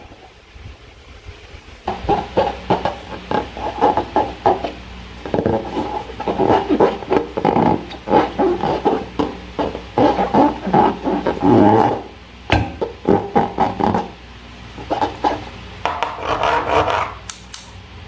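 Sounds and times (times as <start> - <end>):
rubber balloon squeaks: 1.9 - 14.2, 14.8 - 15.5.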